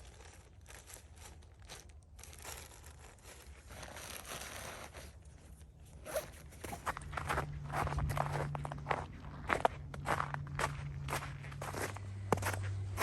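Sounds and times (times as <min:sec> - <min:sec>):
zipper being pulled: 0:02.4 - 0:05.3, 0:05.9 - 0:07.0
footsteps crunching in snow: 0:06.0 - 0:13.0.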